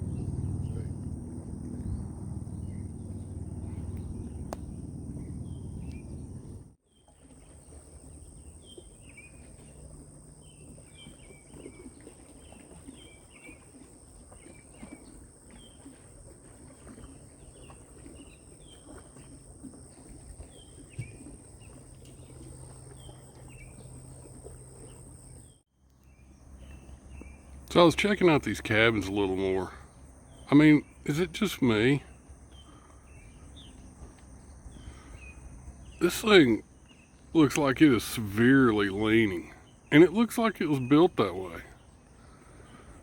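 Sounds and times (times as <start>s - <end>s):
bird chirping: 0.0s - 6.6s
low rumbling noise: 0.0s - 6.8s
insects droning: 0.0s - 43.0s.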